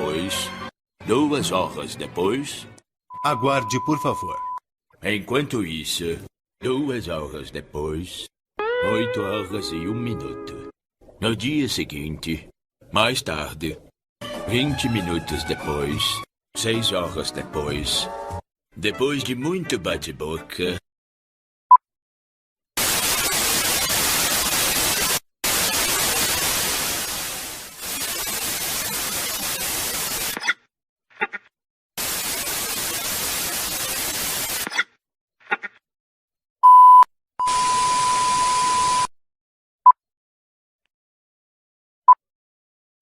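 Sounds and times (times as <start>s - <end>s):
white-noise static: 22.8s - 30.4s, 32.0s - 34.6s.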